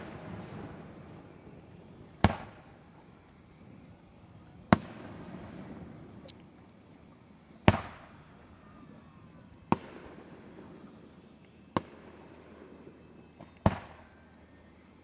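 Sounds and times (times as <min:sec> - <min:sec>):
firework shells booming: 0:02.1 - 0:02.9, 0:04.7 - 0:06.2, 0:07.6 - 0:08.2.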